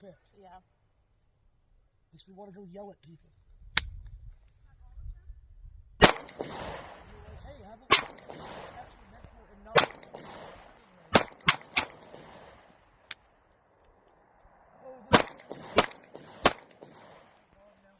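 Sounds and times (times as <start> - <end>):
gunshots with echo: 6.0 - 13.2, 14.5 - 17.6.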